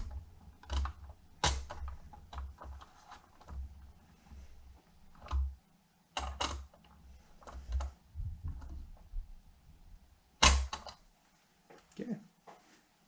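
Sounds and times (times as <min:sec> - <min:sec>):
hand tools clicking and knocking: 0:00.0 - 0:03.9, 0:10.4 - 0:11.0.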